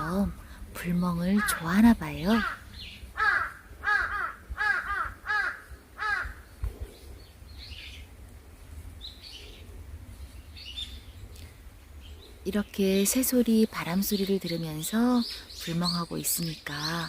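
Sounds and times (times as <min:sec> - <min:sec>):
crows cawing: 0:01.4 - 0:01.7, 0:02.3 - 0:06.5.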